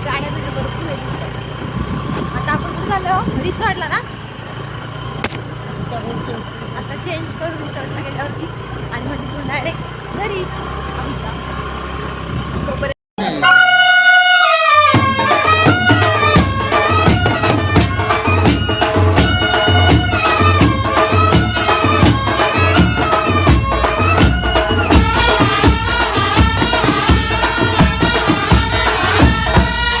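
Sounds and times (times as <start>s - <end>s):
background music with beat and bass: 14.4s - 30.0s.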